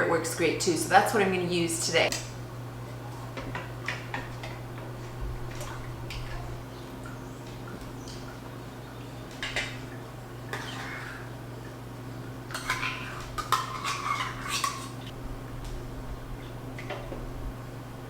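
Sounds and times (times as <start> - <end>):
steady low hum: 0.0 - 18.0
metal utensil scraping a steel pot: 12.6 - 15.0.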